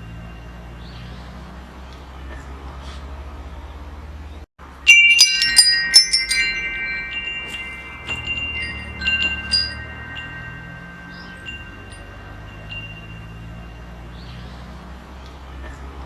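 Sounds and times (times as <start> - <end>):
wind chimes ringing: 0.0 - 1.7, 4.6 - 15.0.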